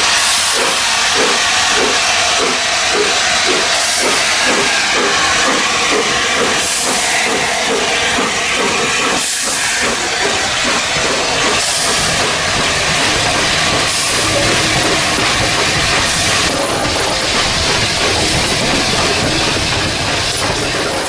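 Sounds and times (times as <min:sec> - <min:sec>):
locomotive exhaust beat: 0:00.0 - 0:21.0
steam hiss: 0:00.0 - 0:21.0.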